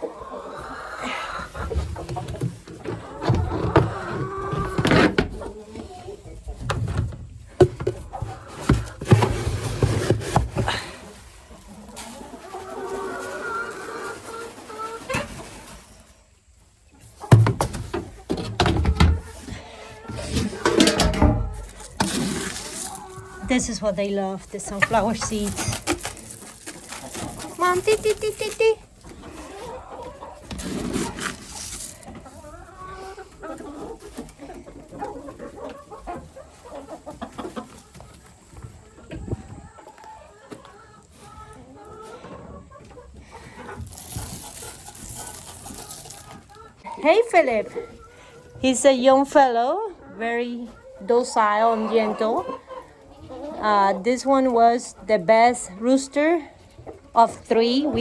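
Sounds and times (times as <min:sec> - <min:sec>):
chicken calling: 0:18.9 - 0:49.2
loud rustling: 0:20.5 - 0:28.8, 0:43.8 - 0:46.5.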